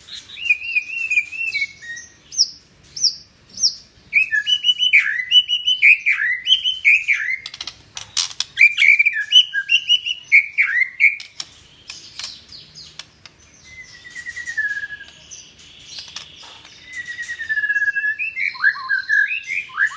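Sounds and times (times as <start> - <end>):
bird singing whistled song: 0.1 - 7.6, 8.2 - 19.9
sharp clicks: 11.1 - 13.4.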